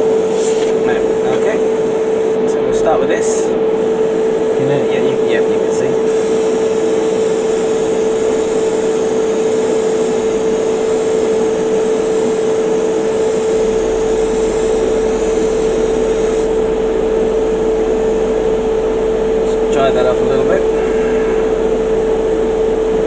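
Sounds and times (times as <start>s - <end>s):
airbrush air hiss: 0.0s - 23.0s
motor humming: 20.2s - 23.0s.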